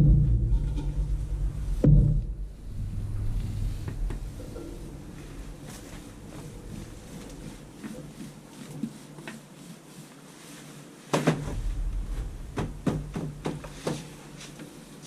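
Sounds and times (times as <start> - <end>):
sharp knocks and clunks: 0.0 - 6.1, 11.2 - 14.3
low rumble: 0.0 - 8.5, 11.4 - 15.0.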